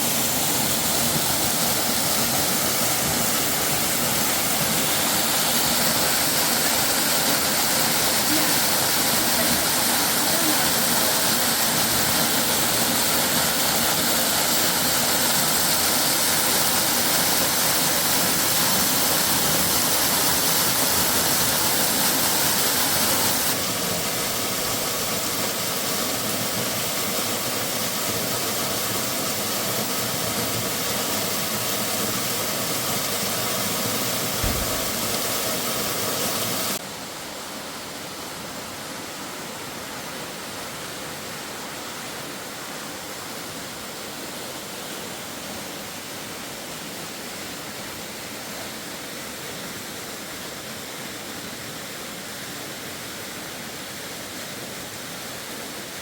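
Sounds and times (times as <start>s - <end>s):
waterfall rushing: 0.0s - 37.2s.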